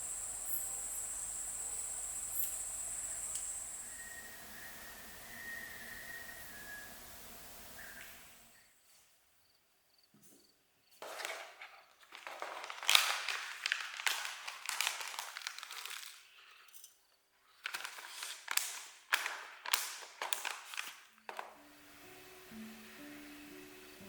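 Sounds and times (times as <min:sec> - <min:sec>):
rustling and crinkling: 0:10.2 - 0:16.7, 0:17.3 - 0:21.6.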